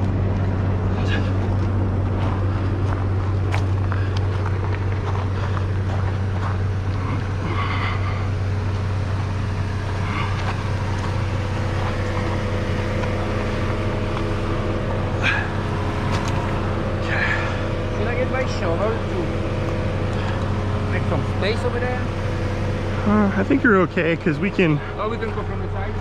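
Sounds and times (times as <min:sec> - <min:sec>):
vehicle engine idling: 0:00.0 - 0:26.0.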